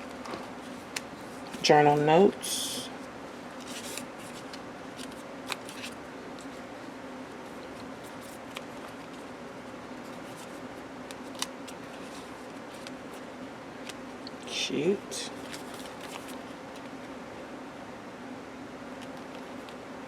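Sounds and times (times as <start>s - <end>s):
steady low hum: 0.0s - 20.0s
paper pages rustling: 3.6s - 9.3s, 10.0s - 14.0s, 15.3s - 17.1s.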